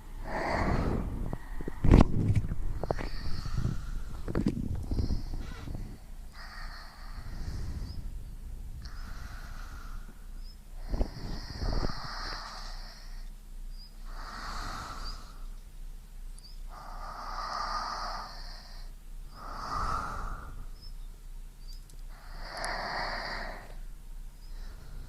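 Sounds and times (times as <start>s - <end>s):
person breathing slowly: 0.0s - 13.4s, 14.0s - 15.6s, 16.6s - 21.0s, 22.0s - 25.0s
faint small clicks: 16.3s - 16.6s, 21.6s - 22.8s.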